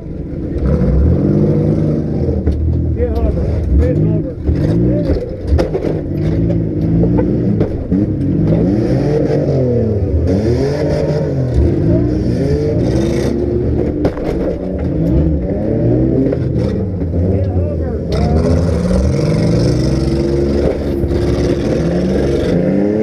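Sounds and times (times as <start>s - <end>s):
car engines revving: 0.0s - 23.0s
cars knocking into each other: 2.3s - 8.6s, 12.8s - 17.2s, 18.0s - 22.6s.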